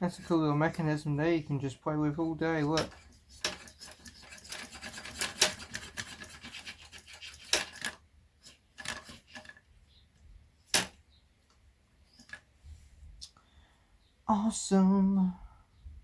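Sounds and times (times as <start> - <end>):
mechanism clicking and scraping: 2.6 - 9.6.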